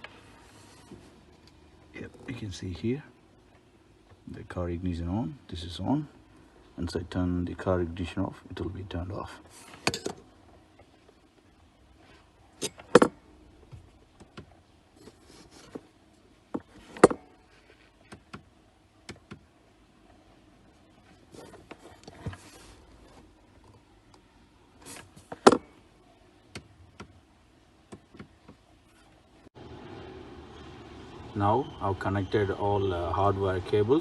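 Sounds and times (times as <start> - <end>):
cables and parts clicking: 16.5 - 19.5.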